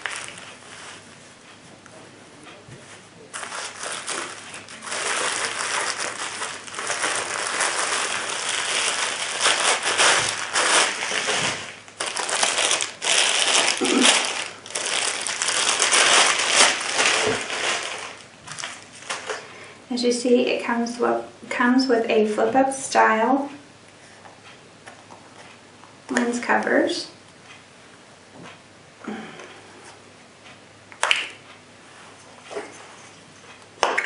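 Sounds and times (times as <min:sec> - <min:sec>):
packaging crinkling: 0:00.0 - 0:01.0, 0:03.3 - 0:19.5.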